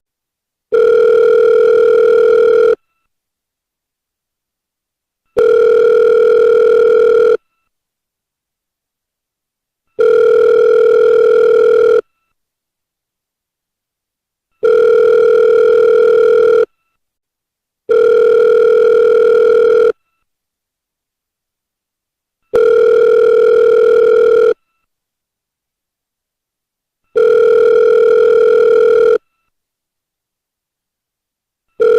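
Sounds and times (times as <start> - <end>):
telephone ringback tone: 0.7 - 2.8, 5.3 - 7.4, 10.0 - 12.1, 14.6 - 16.7, 17.9 - 20.0, 22.5 - 24.6, 27.1 - 29.2.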